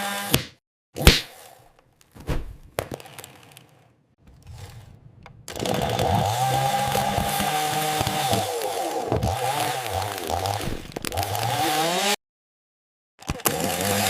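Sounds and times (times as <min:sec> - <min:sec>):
chainsaw running: 0:00.0 - 0:00.4, 0:05.5 - 0:12.2, 0:13.2 - 0:14.0
sharp cracks: 0:00.3 - 0:03.9.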